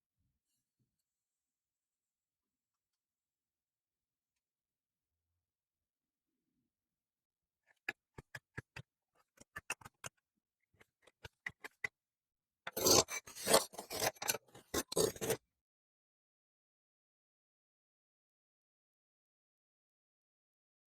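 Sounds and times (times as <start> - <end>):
blade scraping sand: 12.7 - 15.4.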